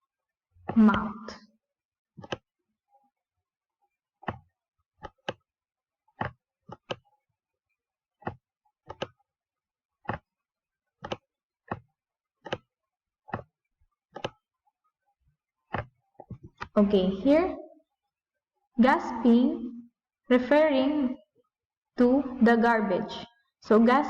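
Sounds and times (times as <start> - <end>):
computer mouse clicks: 2.2 - 2.4, 8.2 - 9.1, 11.0 - 11.8, 12.4 - 12.7, 14.2 - 14.4.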